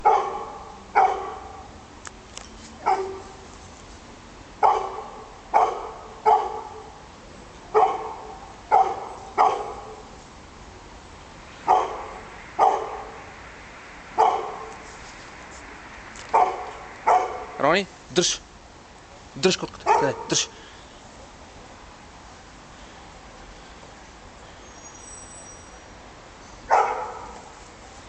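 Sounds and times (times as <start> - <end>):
dog barking: 0.0 - 1.7, 2.8 - 3.4, 4.6 - 7.0, 7.7 - 10.1, 11.6 - 13.2, 14.2 - 14.7, 16.3 - 17.6, 19.8 - 20.6, 26.7 - 27.5.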